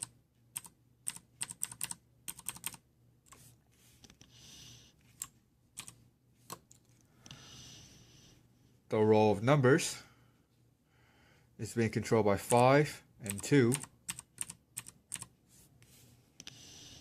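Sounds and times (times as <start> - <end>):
mechanical keyboard keys clicking: 0.0 - 2.8, 13.3 - 15.3.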